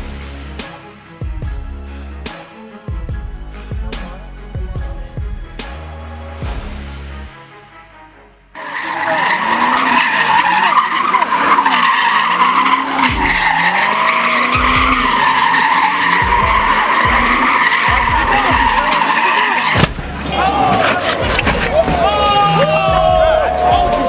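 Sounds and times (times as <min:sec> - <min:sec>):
dull low thumps: 0:02.9 - 0:07.3, 0:16.2 - 0:19.0, 0:19.8 - 0:23.9
engine revving: 0:08.5 - 0:24.0
tyres screeching: 0:08.6 - 0:24.0.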